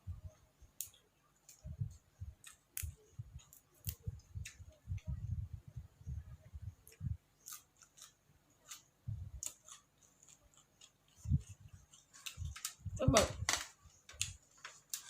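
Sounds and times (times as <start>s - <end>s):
person chewing food: 6.8s - 12.8s.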